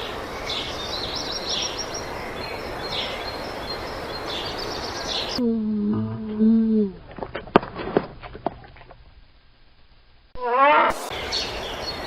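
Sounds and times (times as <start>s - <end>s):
small birds chirping: 0.0s - 5.4s, 10.4s - 12.0s
steady outdoor noise: 0.0s - 12.0s.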